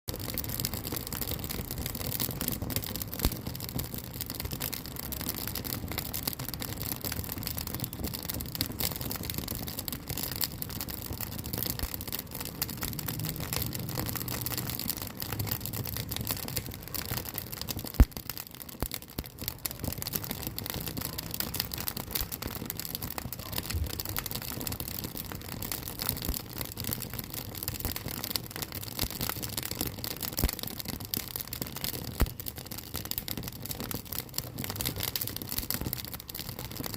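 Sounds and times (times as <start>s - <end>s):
wood fire crackling and popping: 0.1s - 36.9s.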